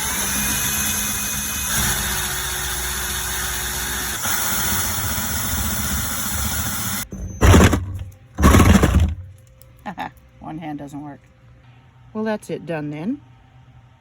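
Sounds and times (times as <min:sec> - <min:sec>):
electric power tool running: 0:00.0 - 0:09.3.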